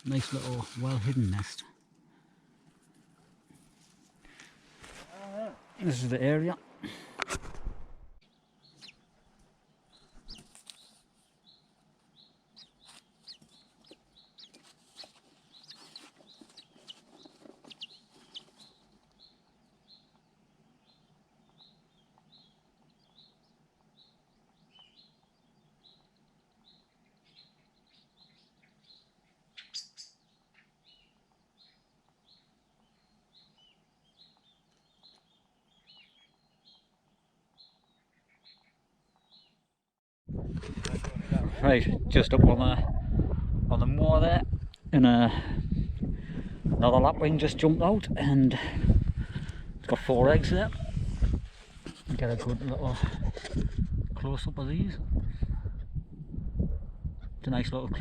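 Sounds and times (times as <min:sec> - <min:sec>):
lower bird chirp: 0:08.2 - 0:39.7.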